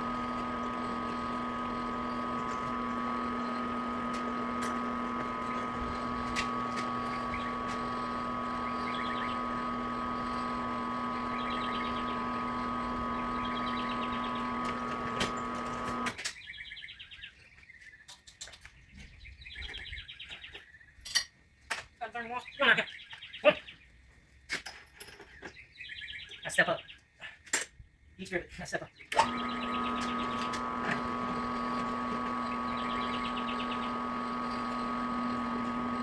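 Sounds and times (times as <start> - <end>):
machine humming: 0.0 - 16.2, 29.2 - 36.0
birds chirping: 0.0 - 21.1, 22.0 - 24.1, 25.2 - 27.3, 28.2 - 36.0.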